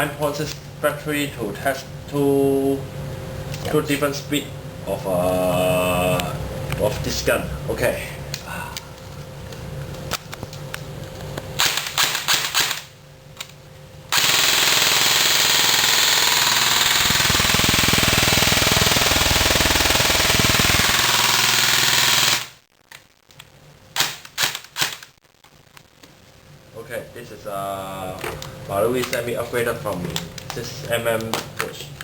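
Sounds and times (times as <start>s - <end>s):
airsoft gun firing full auto: 14.1s - 22.6s.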